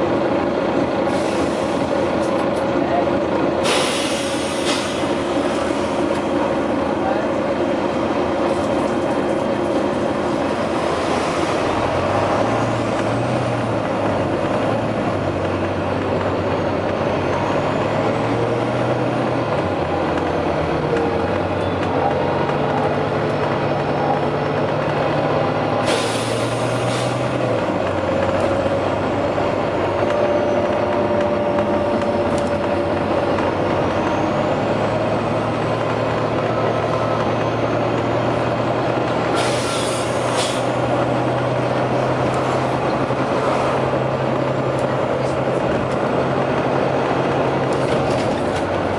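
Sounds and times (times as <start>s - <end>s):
bus diesel engine: 0.0s - 48.9s
air brakes hissing: 1.1s - 2.0s, 3.6s - 5.2s, 25.8s - 27.3s, 39.3s - 40.8s.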